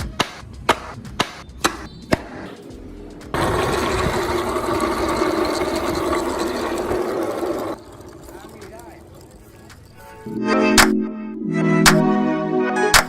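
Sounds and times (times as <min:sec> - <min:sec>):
small electric power tool running: 0:03.4 - 0:09.2.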